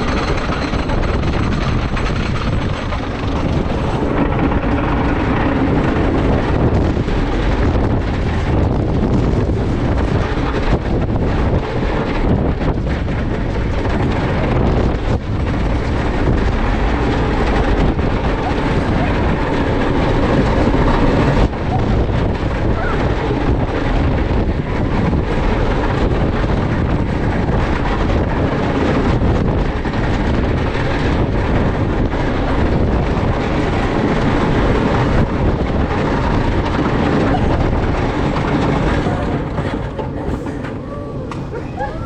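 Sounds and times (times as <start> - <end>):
roller coaster rumbling on track: 0.0 - 42.0
wind buffeting microphone: 0.0 - 42.0.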